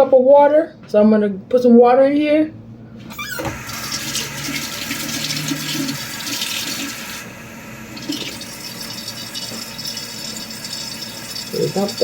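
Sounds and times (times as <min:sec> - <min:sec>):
water running into a measuring cup: 0:03.2 - 0:12.0.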